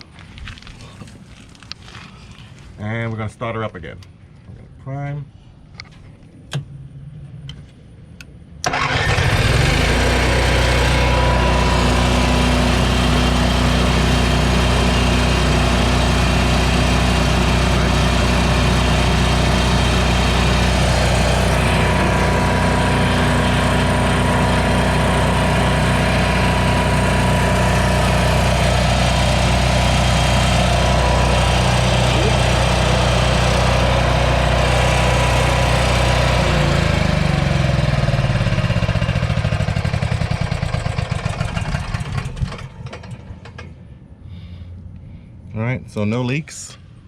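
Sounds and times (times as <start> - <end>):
generator engine running: 8.6 - 43.6.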